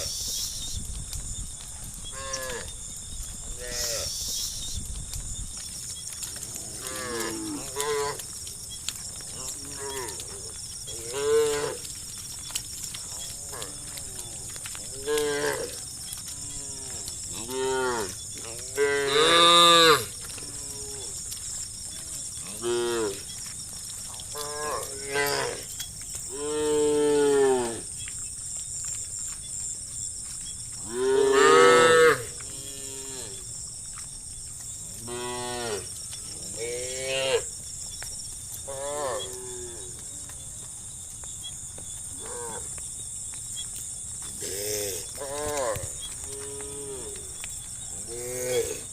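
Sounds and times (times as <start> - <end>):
steady high-pitched hiss: 0.0 - 48.9
cows mooing: 6.4 - 8.3, 9.2 - 11.9, 13.1 - 21.4, 22.1 - 23.2, 24.3 - 25.7, 30.8 - 33.4.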